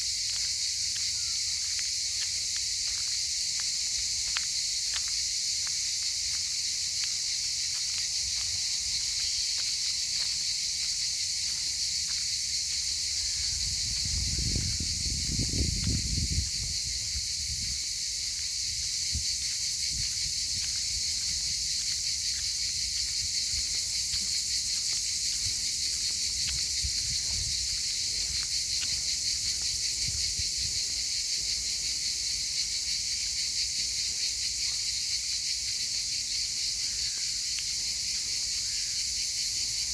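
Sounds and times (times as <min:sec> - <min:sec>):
insects chirring: 0:00.0 - 0:39.9.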